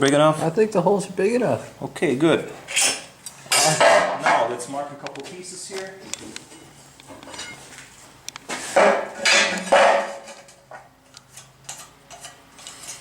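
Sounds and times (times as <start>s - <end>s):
steel tools clanking and scraping: 2.7s - 4.5s, 6.5s - 7.7s, 8.8s - 10.6s.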